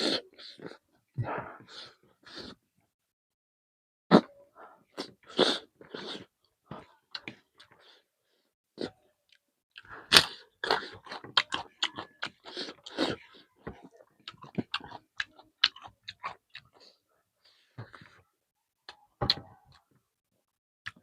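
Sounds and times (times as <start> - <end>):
chewing and crunching food: 8.8 - 17.0.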